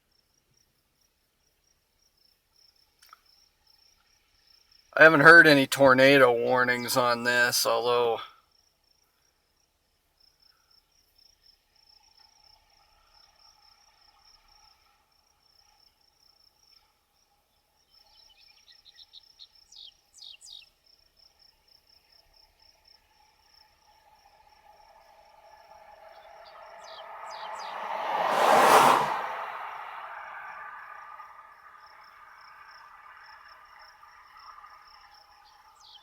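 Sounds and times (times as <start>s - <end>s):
bird chirps: 26.1s - 27.8s, 35.4s - 36.0s
whoosh of something rushing past: 27.3s - 29.7s.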